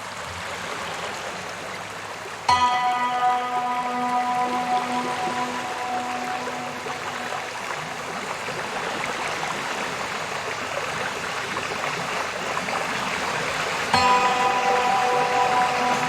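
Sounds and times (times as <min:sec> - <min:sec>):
music with long held tones: 0:02.5 - 0:09.4, 0:12.5 - 0:16.0
waterfall rushing: 0:02.5 - 0:16.0.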